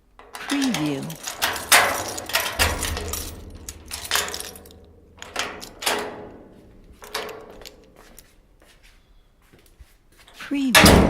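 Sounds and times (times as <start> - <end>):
footsteps on hard floor: 7.9 - 10.4.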